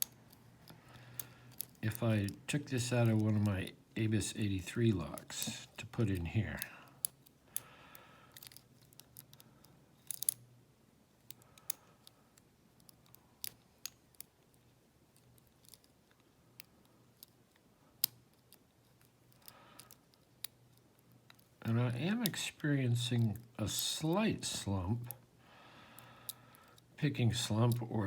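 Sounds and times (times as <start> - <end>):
faint metallic lock clicks: 8.4 - 10.5.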